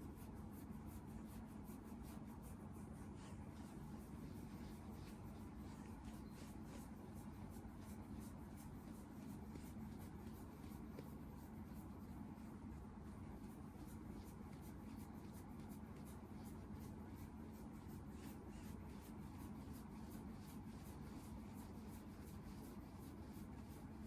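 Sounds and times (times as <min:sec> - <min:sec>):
faint light scratching: 0:00.0 - 0:17.0
steady low hum: 0:00.0 - 0:24.0.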